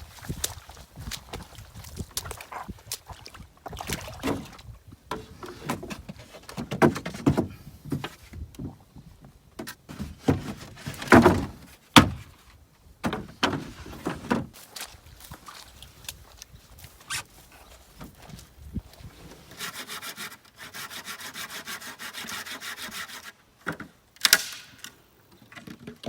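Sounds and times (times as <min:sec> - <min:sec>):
dry wood knocking and cracking: 0:00.3 - 0:08.8, 0:09.6 - 0:15.4, 0:23.6 - 0:26.0.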